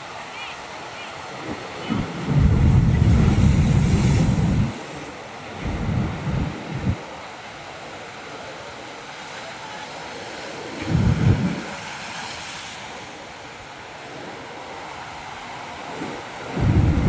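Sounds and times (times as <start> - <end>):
waves washing over rocks: 0.0 - 17.0
wind buffeting microphone: 1.3 - 7.2, 10.7 - 12.3, 14.2 - 17.0.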